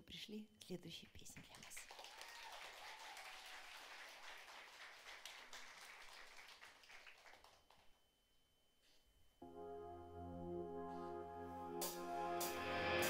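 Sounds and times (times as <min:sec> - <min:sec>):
faint audience applause: 0:01.4 - 0:08.0.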